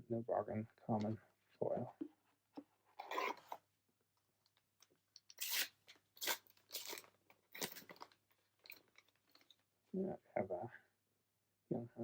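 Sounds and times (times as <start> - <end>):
foil wrapper tearing and crinkling: 5.3 - 7.8.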